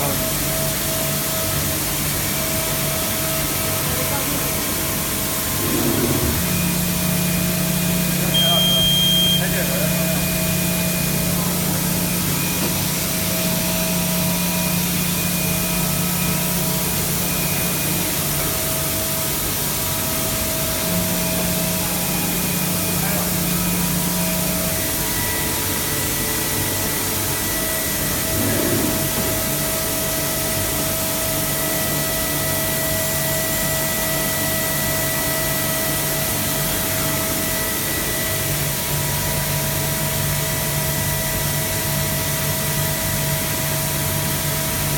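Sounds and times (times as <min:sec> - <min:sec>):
steady machine tones: 0:02.7 - 0:31.1
machine hiss: 0:04.9 - 0:10.3.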